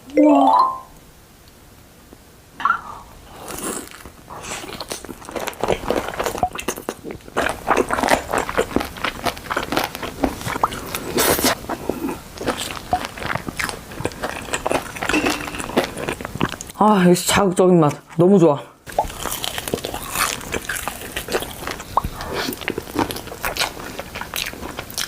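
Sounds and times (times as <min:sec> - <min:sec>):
crunchy bites and chewing: 0:03.4 - 0:16.8, 0:18.9 - 0:25.0.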